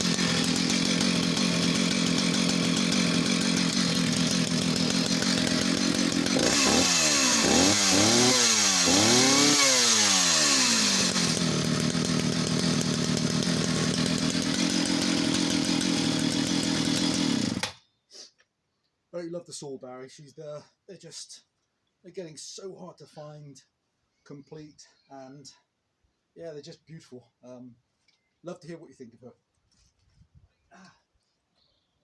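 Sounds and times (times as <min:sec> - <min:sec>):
chainsaw idling and revving: 0:00.0 - 0:17.8.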